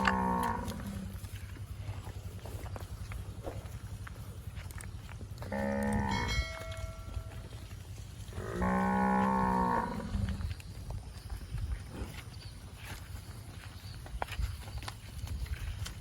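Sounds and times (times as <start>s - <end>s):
cow mooing: 0.0s - 1.2s, 5.4s - 6.8s, 8.3s - 10.5s.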